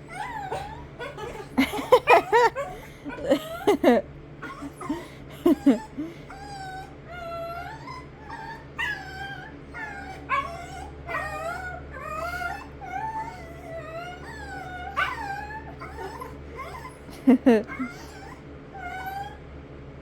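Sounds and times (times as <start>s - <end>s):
dog whining: 0.0s - 19.4s.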